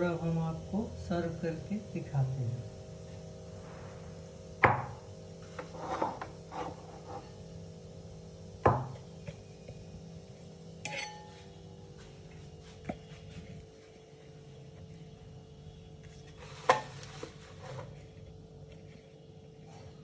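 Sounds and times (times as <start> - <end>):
steady low hum: 0.0 - 20.0
dishes knocking: 8.7 - 9.0
ringing clink of metal or glass: 10.8 - 11.3
scraping of utensils: 10.8 - 11.4.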